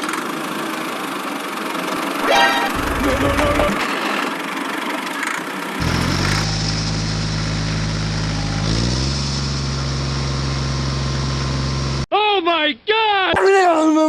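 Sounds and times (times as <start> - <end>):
engine humming: 2.2 - 4.8, 5.8 - 12.1.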